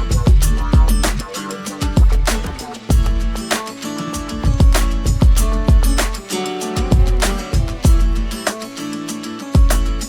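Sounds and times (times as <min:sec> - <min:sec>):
kick drum: 0:00.0 - 0:01.2, 0:01.8 - 0:03.4, 0:04.3 - 0:06.2, 0:06.8 - 0:08.2, 0:09.6 - 0:09.9
hi-hat: 0:00.0 - 0:10.0
plucked guitar-like notes: 0:00.0 - 0:10.0.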